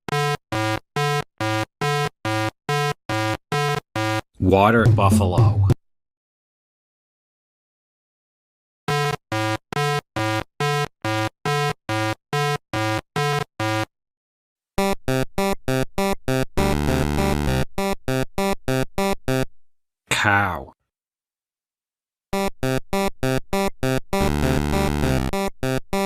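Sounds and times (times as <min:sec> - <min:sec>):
synthesizer music: 0:04.0 - 0:05.8, 0:15.1 - 0:19.4, 0:22.6 - 0:26.0.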